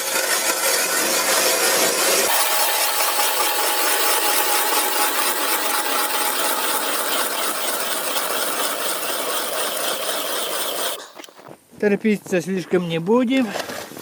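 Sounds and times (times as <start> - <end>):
ice auger grinding through ice: 0.3 - 11.2.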